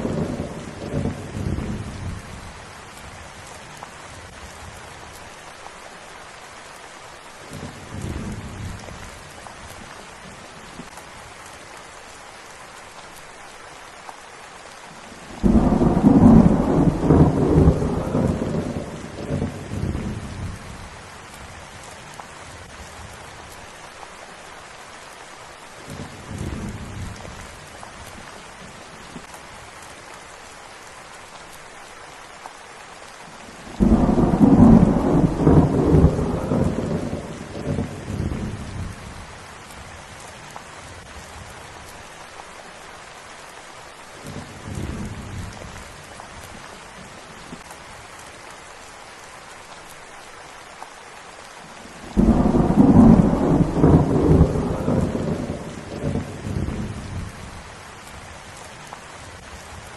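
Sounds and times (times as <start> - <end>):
thunder rumbling: 0.0 - 2.6, 15.2 - 20.9, 33.5 - 39.2, 52.0 - 57.6
steady rain falling: 0.0 - 59.9.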